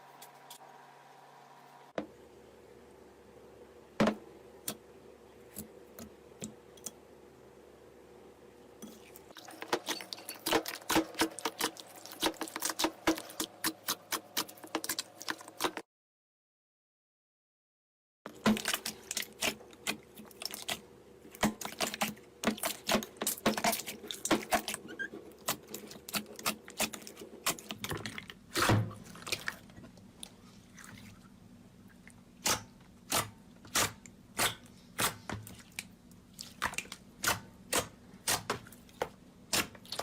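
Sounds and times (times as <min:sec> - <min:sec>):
slime squishing with wet pops: 0:09.4 - 0:15.8, 0:32.0 - 0:40.0.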